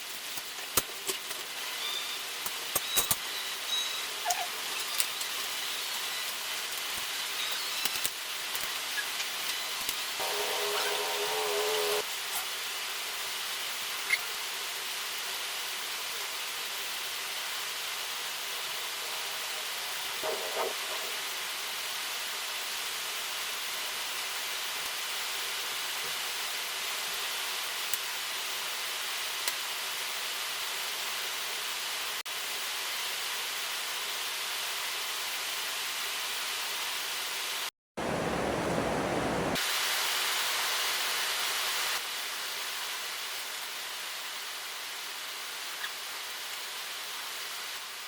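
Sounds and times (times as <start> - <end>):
background hiss: 38.0 - 40.0.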